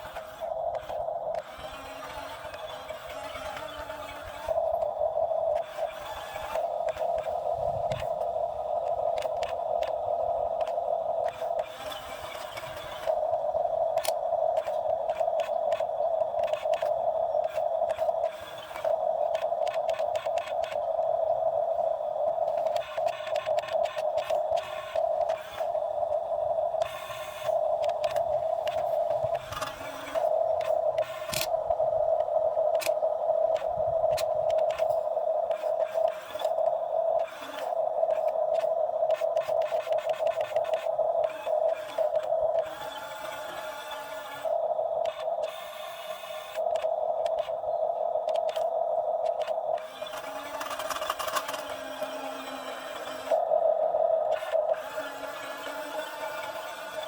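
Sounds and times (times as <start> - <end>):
excavator whine: 0.0 - 47.7, 49.3 - 53.4
short scraping clicks: 26.8 - 31.6.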